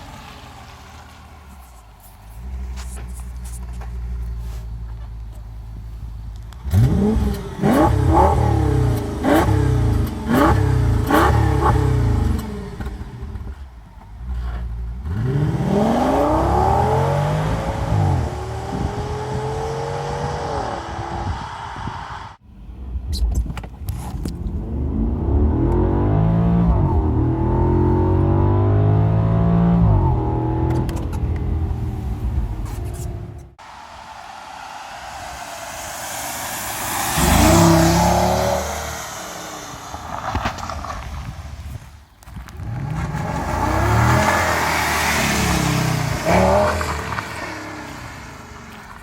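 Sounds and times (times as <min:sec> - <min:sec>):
car engine accelerating hard: 0:06.6 - 0:13.6, 0:14.4 - 0:22.4, 0:24.5 - 0:41.7, 0:42.6 - 0:49.0.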